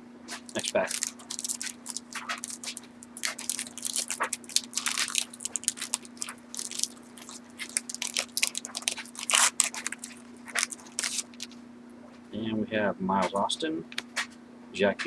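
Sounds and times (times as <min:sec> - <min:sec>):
steady low hum: 0:00.0 - 0:15.0
wrapper crinkling: 0:00.3 - 0:11.6.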